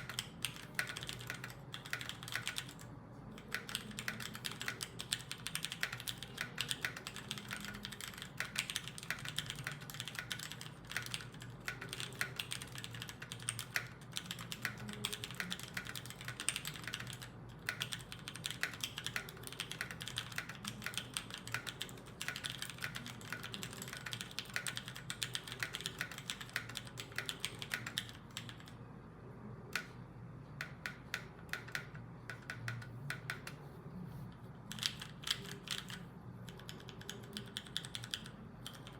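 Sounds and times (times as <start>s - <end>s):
mechanical keyboard typing: 0.0s - 28.8s, 30.6s - 33.6s, 34.6s - 38.9s.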